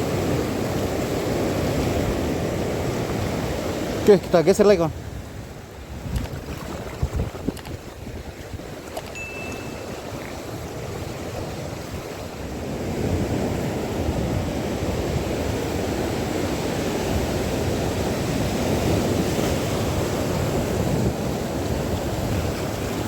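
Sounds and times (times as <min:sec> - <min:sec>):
rushing water: 0:00.0 - 0:23.0
wind buffeting microphone: 0:04.8 - 0:23.0.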